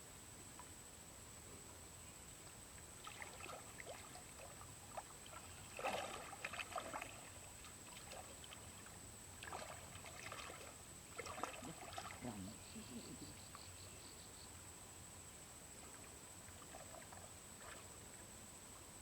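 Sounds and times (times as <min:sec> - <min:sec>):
water splashing and sloshing: 0:02.8 - 0:12.5, 0:15.7 - 0:18.4.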